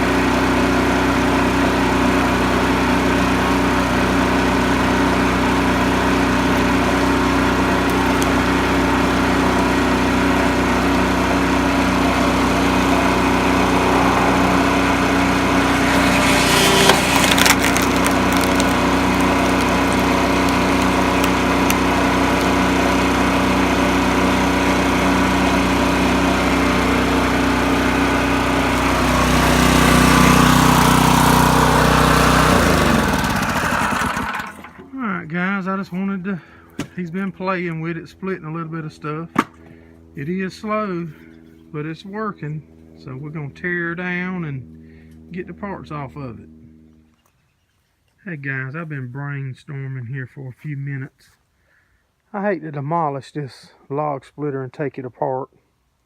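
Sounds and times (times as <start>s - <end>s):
small gas engine running: 0.0s - 35.2s, 36.3s - 47.2s
wood cracking and splitting: 4.4s - 24.8s.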